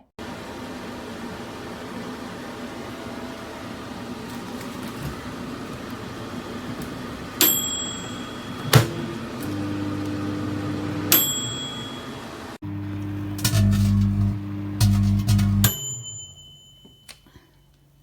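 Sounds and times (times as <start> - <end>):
microwave oven humming: 0.2 - 16.9
microwave bell ding: 7.4 - 17.7.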